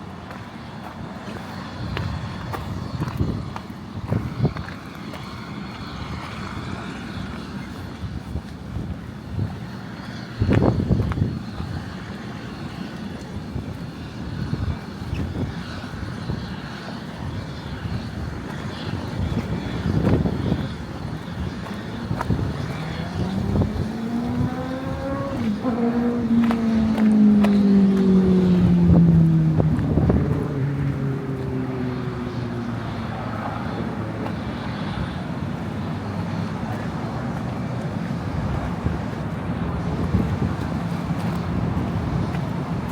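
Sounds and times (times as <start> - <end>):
low city rumble: 0.0 - 42.9
passing engine hum: 0.0 - 42.9
low buffeting burst: 19.8 - 34.2.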